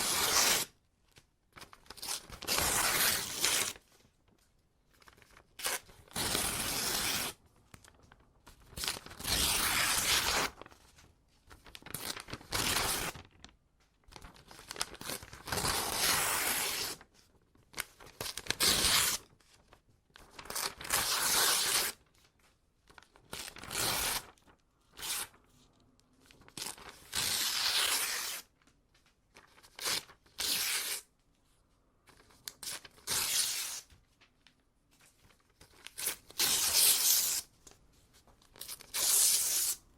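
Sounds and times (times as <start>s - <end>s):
paper ripping: 1.6s - 3.8s, 5.1s - 7.4s, 8.6s - 10.8s, 11.6s - 13.3s, 14.1s - 17.0s, 20.3s - 22.0s, 23.3s - 25.4s, 26.3s - 28.5s.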